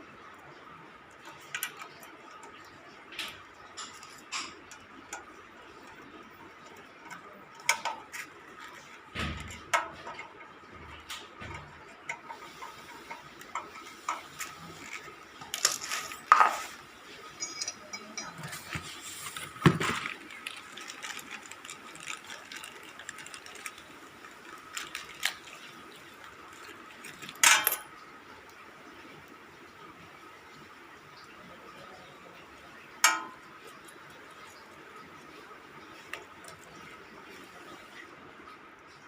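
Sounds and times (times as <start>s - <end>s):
metal parts clinking: 14.4s - 23.8s, 26.5s - 27.9s.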